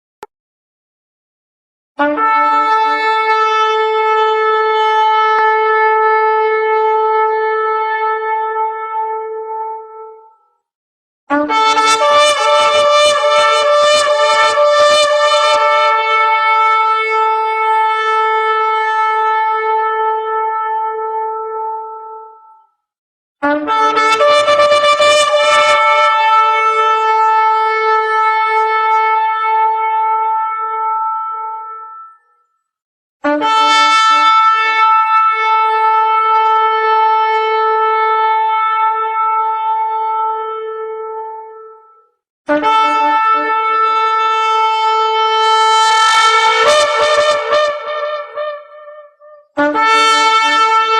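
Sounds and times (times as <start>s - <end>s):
shofar blast: 2.0s - 9.6s, 11.3s - 21.8s, 23.4s - 32.2s, 42.5s - 50.9s.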